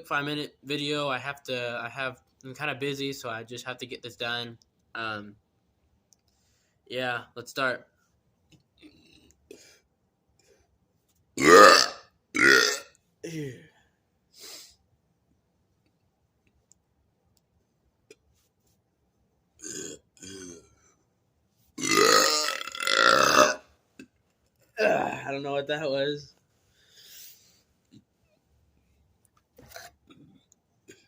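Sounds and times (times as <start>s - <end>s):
man burping: 11.4s - 13.7s, 19.6s - 20.8s, 21.8s - 23.6s, 24.8s - 25.3s.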